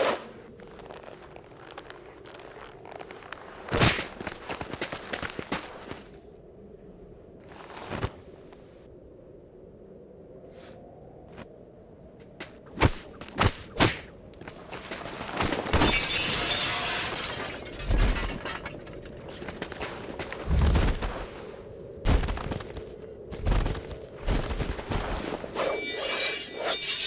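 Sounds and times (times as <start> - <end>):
glass breaking and debris crashing: 15.7 - 19.4.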